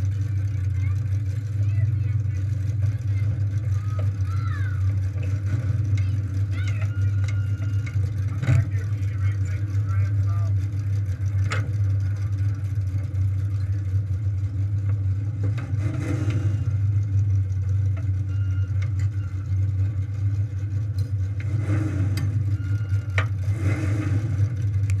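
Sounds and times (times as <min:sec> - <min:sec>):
engine running steadily: 0:00.0 - 0:25.0.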